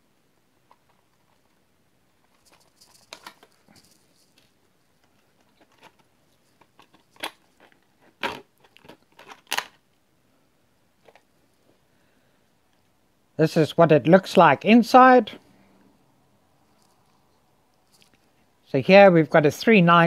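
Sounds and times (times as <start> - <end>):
small plastic clicks and rattles: 2.2 - 9.8
loud plastic clacks: 5.4 - 9.8.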